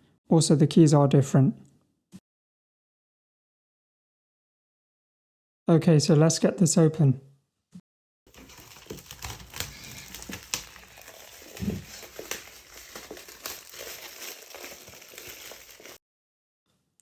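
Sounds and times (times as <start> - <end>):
box packaging crinkling and tearing: 8.3 - 16.0.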